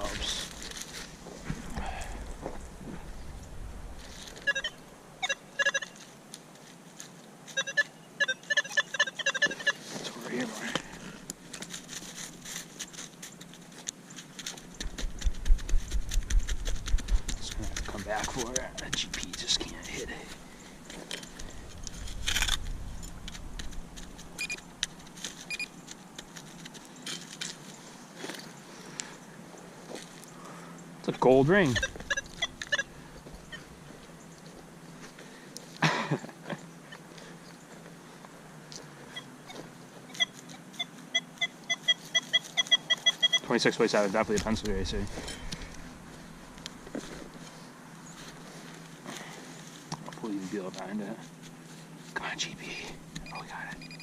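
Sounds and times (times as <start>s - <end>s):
handling rumble: 0.0s - 5.2s, 14.2s - 40.0s
soil crackling: 0.0s - 7.8s, 8.5s - 29.2s, 41.8s - 54.0s
scraping crunch of dirt: 0.0s - 7.9s, 8.6s - 30.5s, 31.1s - 52.3s
metal detector beeps: 4.3s - 6.1s, 7.5s - 10.4s, 22.3s - 24.7s, 25.4s - 25.8s, 31.3s - 33.7s, 39.1s - 43.7s, 53.2s - 54.0s.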